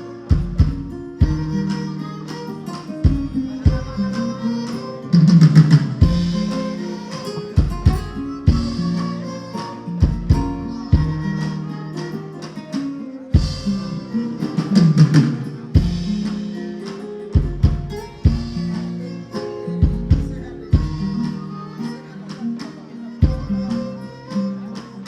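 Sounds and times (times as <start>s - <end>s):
plucked guitar: 0.0s - 25.0s
drums with deep beat: 0.3s - 1.7s, 3.0s - 4.2s, 5.2s - 6.8s, 7.6s - 9.1s, 10.0s - 11.5s, 13.4s - 19.0s, 19.8s - 21.4s, 23.2s - 23.8s.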